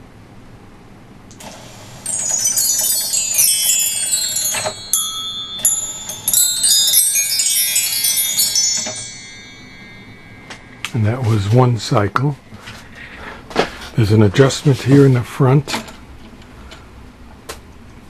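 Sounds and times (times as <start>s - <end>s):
high ringing chimes cascade: 2.0s - 11.6s.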